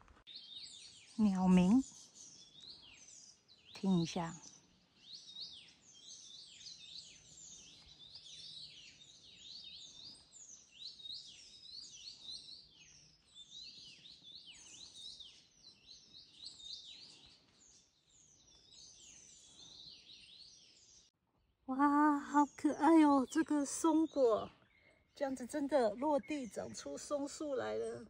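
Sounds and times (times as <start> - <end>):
forest birds chirping: 0.0 - 28.0.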